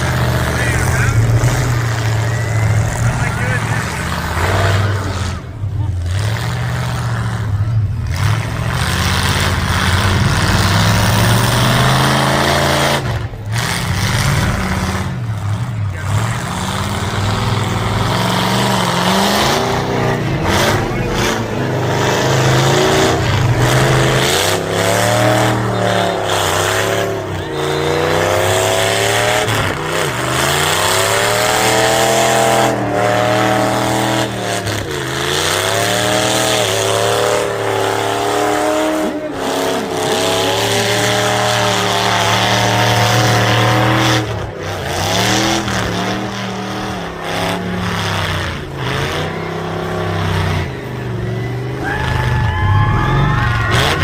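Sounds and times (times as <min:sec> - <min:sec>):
high squealing whine: 0:00.0 - 0:05.6
car engines revving: 0:00.0 - 0:54.0.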